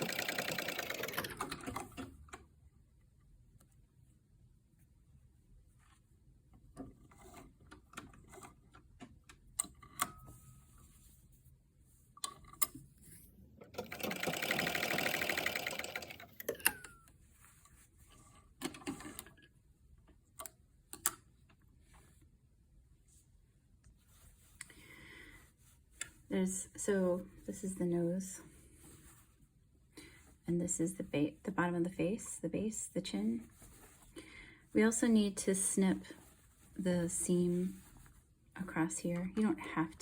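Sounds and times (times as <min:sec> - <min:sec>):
sewing machine stitching: 0:00.0 - 0:02.0, 0:13.6 - 0:16.8
fabric handling: 0:28.4 - 0:30.4, 0:33.2 - 0:39.4.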